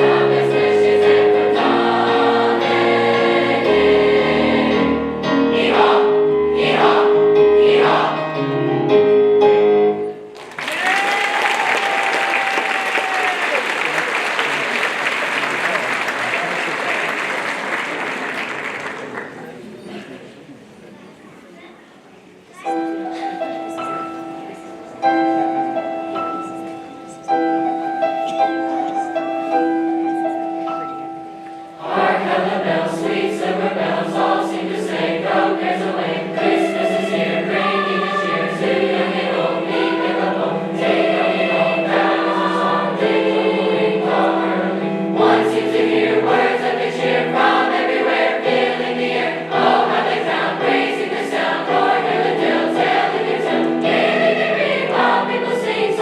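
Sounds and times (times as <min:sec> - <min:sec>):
choir singing: 0:00.0 - 0:08.7, 0:31.6 - 0:56.0.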